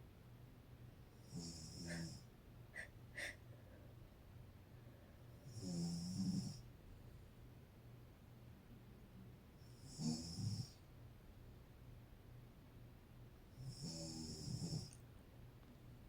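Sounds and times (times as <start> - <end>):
woman snoring: 1.4 - 2.2, 2.8 - 3.4, 9.9 - 10.7, 13.6 - 15.0.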